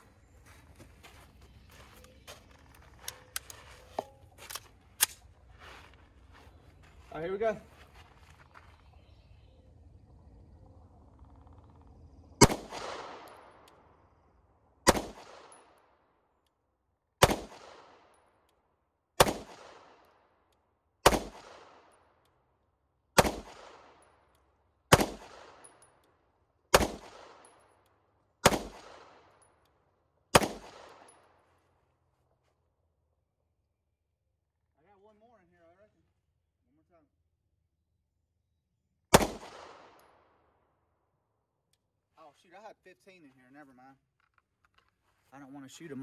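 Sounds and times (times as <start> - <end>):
pistol shots: 12.4 - 13.7, 14.8 - 15.8, 17.2 - 18.2, 19.2 - 20.1, 21.0 - 21.9, 23.2 - 24.0, 24.9 - 25.8, 26.7 - 27.5, 28.4 - 29.4, 30.3 - 31.2, 39.1 - 40.2.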